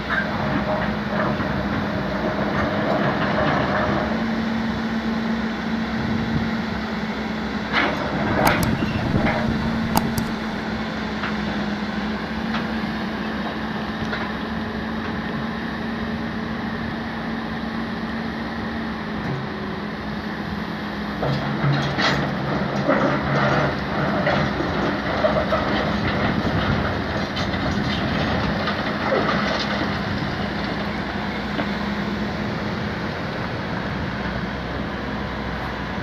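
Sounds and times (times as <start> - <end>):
steady mechanical hum: 0.0 - 36.0
sharp knocks and clicks: 8.4 - 10.5.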